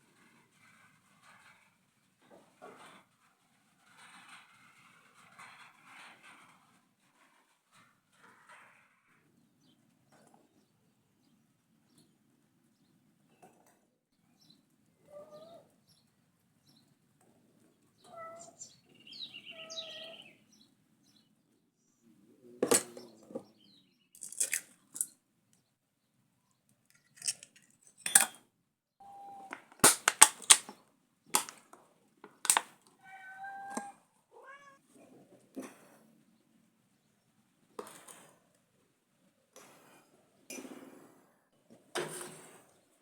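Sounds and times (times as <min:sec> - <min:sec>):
cat meowing: 0:15.0 - 0:15.7, 0:18.0 - 0:18.7, 0:19.5 - 0:20.3, 0:29.0 - 0:29.6, 0:33.0 - 0:34.8.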